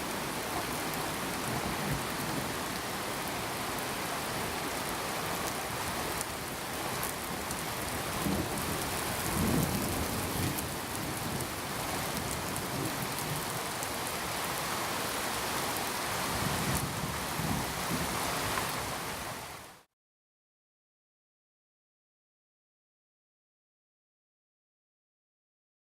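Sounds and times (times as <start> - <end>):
steady rain falling: 0.0 - 19.9
low rumble of thunder: 8.0 - 13.7.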